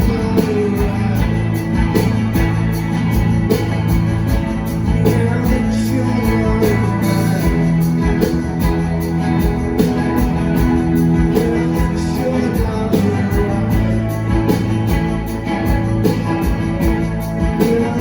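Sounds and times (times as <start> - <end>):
electric guitars holding chords: 0.0 - 18.0
steady drumbeat: 0.0 - 18.0.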